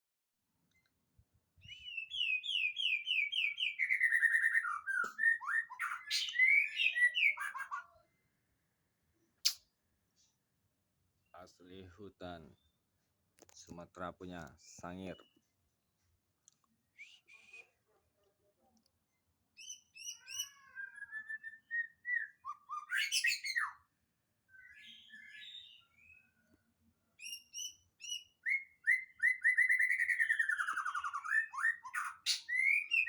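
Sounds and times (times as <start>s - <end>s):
songbird whistling and chattering: 1.6s - 8.1s, 19.6s - 23.9s, 27.2s - 33.0s.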